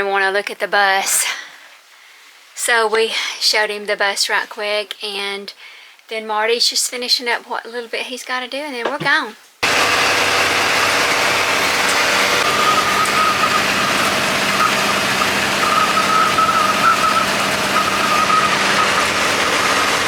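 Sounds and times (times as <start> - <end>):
bus engine running: 9.6 - 20.0
high whine: 9.6 - 20.0.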